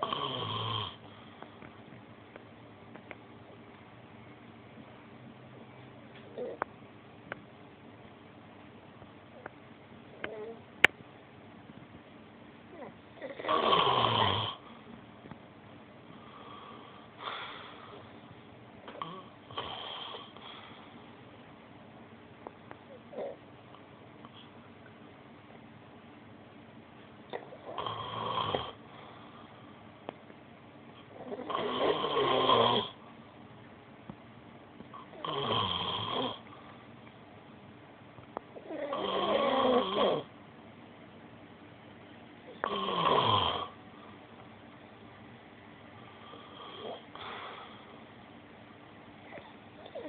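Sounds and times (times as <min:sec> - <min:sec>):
snoring: 0:00.0 - 0:01.0, 0:12.8 - 0:14.6, 0:18.9 - 0:20.6, 0:27.3 - 0:28.8, 0:31.2 - 0:33.0, 0:35.0 - 0:36.5, 0:38.6 - 0:40.3, 0:42.5 - 0:43.8, 0:46.2 - 0:47.8, 0:49.2 - 0:50.0
faint breathing: 0:16.0 - 0:18.4, 0:19.1 - 0:21.2, 0:28.8 - 0:29.9, 0:46.0 - 0:48.2.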